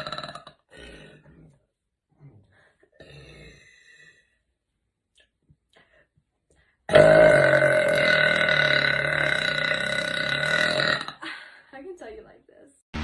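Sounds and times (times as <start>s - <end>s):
woman burping: 0.0s - 1.0s, 6.9s - 11.4s.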